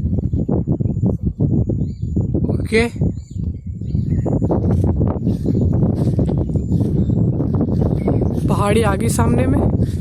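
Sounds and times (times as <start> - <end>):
microphone handling noise: 0.0 - 10.0
wind on microphone: 0.0 - 10.0
footsteps through grass and brush: 4.5 - 8.5.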